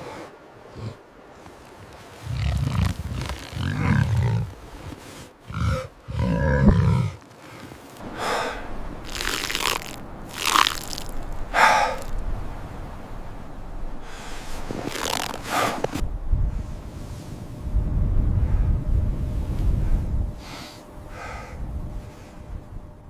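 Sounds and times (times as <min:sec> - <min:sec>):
large animal growling: 0:02.2 - 0:04.6, 0:05.5 - 0:07.2.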